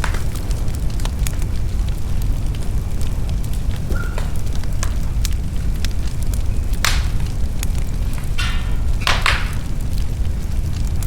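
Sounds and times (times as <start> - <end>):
fire crackling: 0.0 - 11.0
fire flames rumbling: 0.0 - 11.0
sharp wood pops: 6.8 - 7.2, 8.2 - 9.8.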